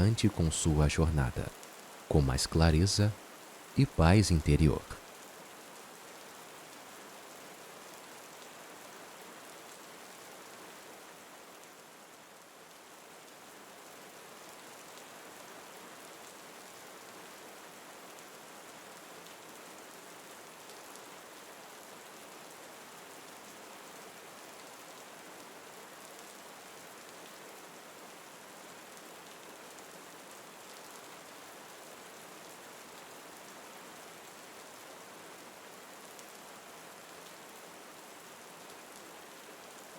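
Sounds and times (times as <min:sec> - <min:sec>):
rain pattering on leaves: 0:00.8 - 0:04.3, 0:05.0 - 0:39.9.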